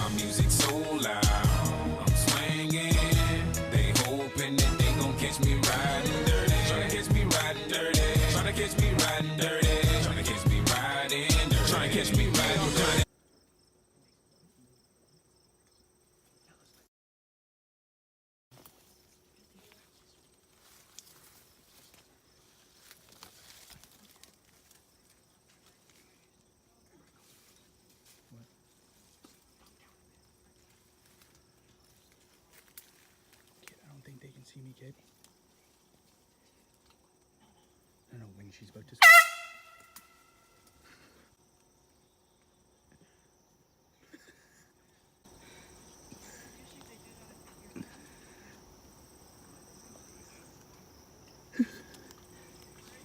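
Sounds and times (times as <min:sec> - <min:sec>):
high insect drone: 0:13.0 - 0:16.8, 0:18.6 - 0:53.0
soft ticks and rustles: 0:18.6 - 0:37.4, 0:51.9 - 0:53.0
air horn blast: 0:39.0 - 0:40.5.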